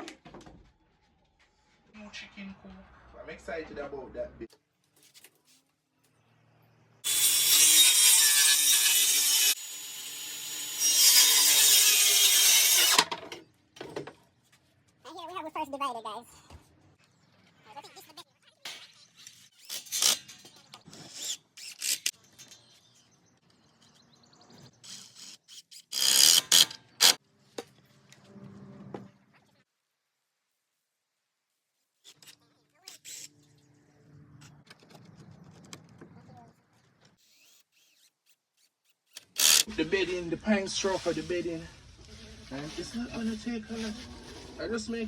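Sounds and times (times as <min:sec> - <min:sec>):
power saw cutting plywood: 0:07.0 - 0:13.1, 0:39.1 - 0:39.7.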